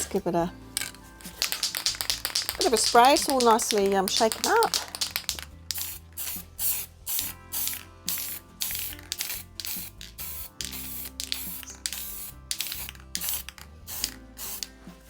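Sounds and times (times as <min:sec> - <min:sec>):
aerosol spray can hissing: 0:00.8 - 0:14.7.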